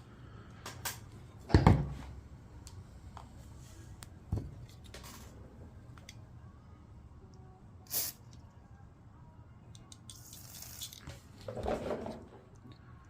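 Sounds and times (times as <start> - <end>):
short hiss: 7.9 - 8.3.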